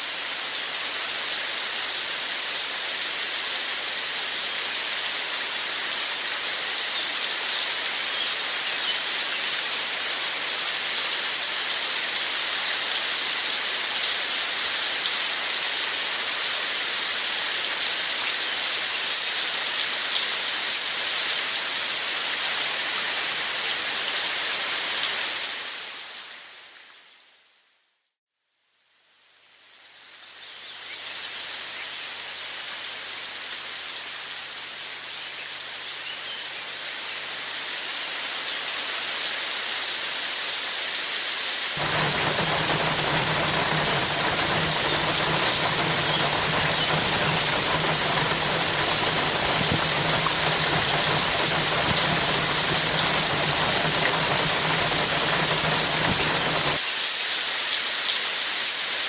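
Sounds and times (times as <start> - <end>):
steady rain: 0.0 - 27.5, 29.1 - 59.0
low rumble: 41.8 - 56.8.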